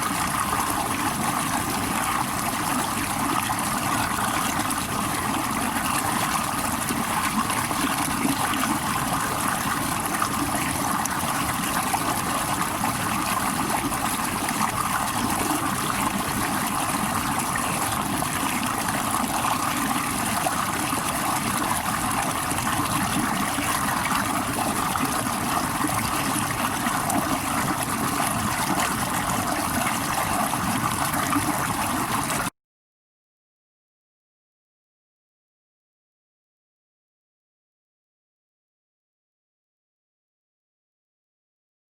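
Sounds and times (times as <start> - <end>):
running water: 0.0 - 32.5.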